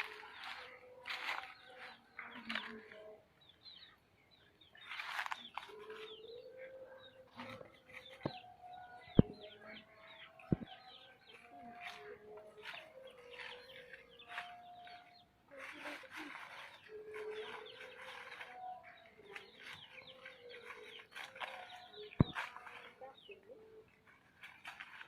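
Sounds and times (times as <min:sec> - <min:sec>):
chicks peeping: 0:00.0 - 0:25.0
hen clucking: 0:04.8 - 0:24.0.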